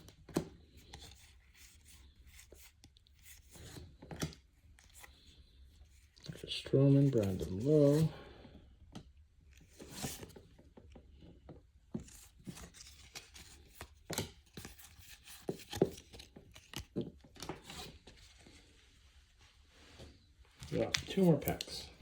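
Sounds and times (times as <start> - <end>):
trading cards clicking and rustling: 6.2 - 8.1, 12.0 - 17.9, 20.6 - 22.0
cards snapping: 20.7 - 21.8.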